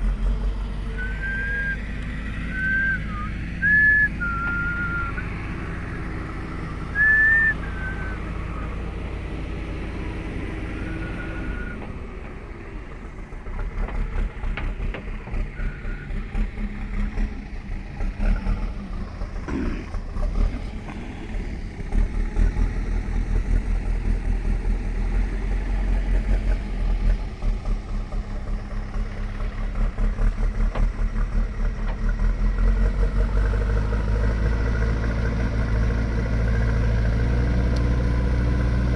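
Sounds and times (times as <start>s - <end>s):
diesel engine running: 0.0s - 38.9s
short whistles: 1.0s - 5.2s, 6.9s - 8.7s, 10.7s - 11.8s, 15.5s - 16.2s.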